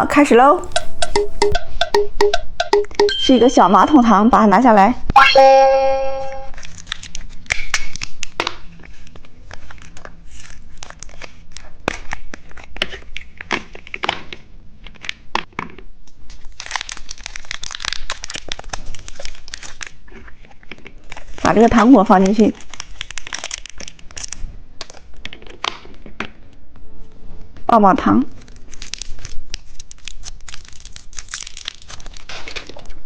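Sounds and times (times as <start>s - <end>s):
short ringing tone: 0.7s - 2.1s, 2.9s - 4.4s, 5.2s - 6.5s
plastic packaging crinkling: 6.5s - 14.4s, 16.3s - 26.1s, 28.3s - 33.0s.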